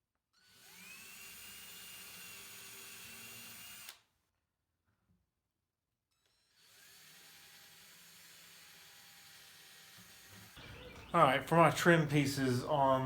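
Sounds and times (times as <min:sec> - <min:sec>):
power drill running: 0:00.4 - 0:04.0, 0:06.1 - 0:11.1.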